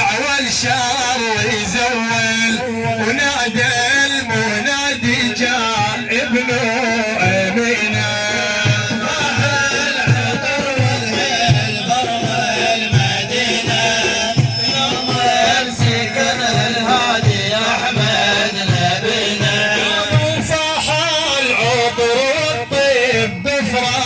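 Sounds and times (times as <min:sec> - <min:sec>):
low drum beat: 0:07.9 - 0:21.0
wavering melody: 0:08.3 - 0:22.7.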